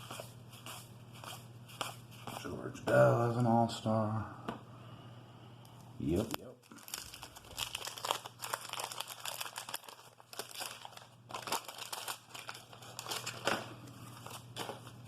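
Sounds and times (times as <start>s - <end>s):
wax paper wrapper crinkling: 6.1s - 15.0s.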